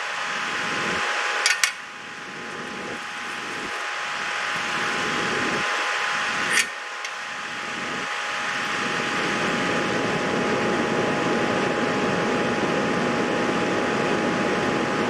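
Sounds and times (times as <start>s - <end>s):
steady rushing hiss: 0.0s - 9.9s
faint hum tone: 0.0s - 15.0s.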